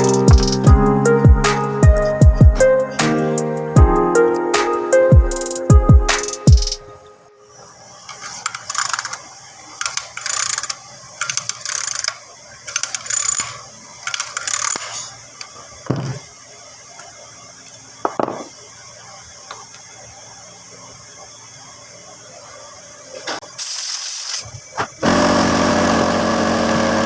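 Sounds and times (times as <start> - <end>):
ratchet wrench clicking: 0.0 - 0.7, 8.1 - 9.2, 9.8 - 15.5.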